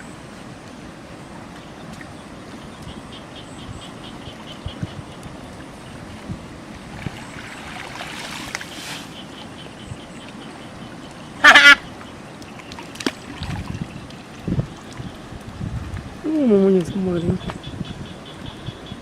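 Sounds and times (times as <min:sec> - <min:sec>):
loud nasal call: 0:11.4 - 0:11.8.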